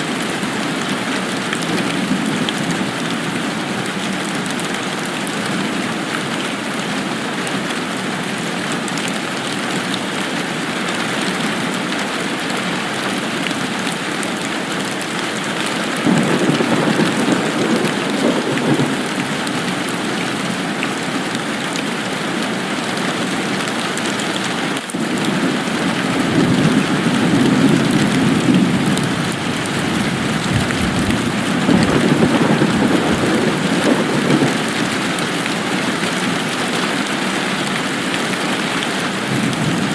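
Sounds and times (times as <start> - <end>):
steady rain falling: 0.0 - 39.9
rolling thunder rumbles: 16.0 - 19.9, 25.0 - 35.4, 39.2 - 39.9.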